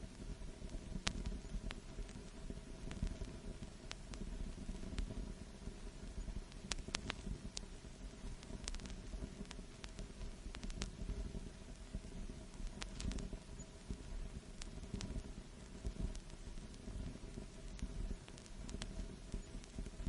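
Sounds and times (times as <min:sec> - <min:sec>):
crackles and pops: 0:00.0 - 0:20.0
vinyl record surface noise: 0:00.0 - 0:20.0.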